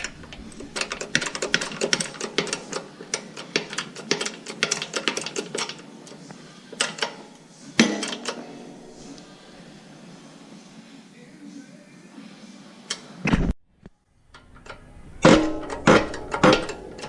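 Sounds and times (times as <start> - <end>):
metal parts clicking and clinking: 0.0 - 6.2, 14.3 - 17.0
loud metallic clank: 7.8 - 9.6, 15.2 - 17.0
metallic knocks: 14.4 - 17.0.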